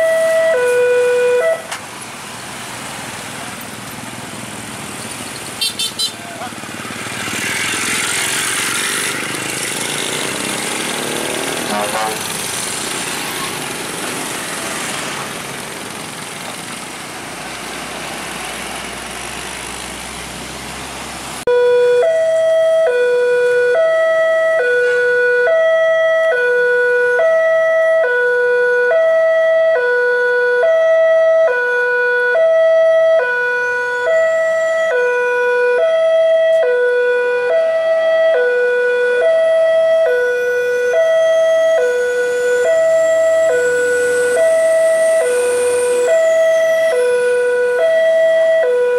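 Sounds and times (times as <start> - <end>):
level crossing warning alarm: 0.0 - 1.8, 21.5 - 48.9.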